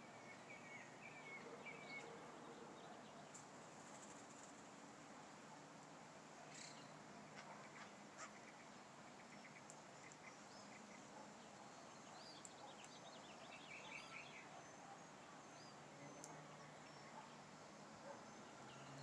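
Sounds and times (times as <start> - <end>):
faint bird chirping: 0.0 - 4.8, 5.4 - 19.0
steady low hiss: 0.0 - 19.0
faint clicks: 9.6 - 10.3, 16.2 - 16.4.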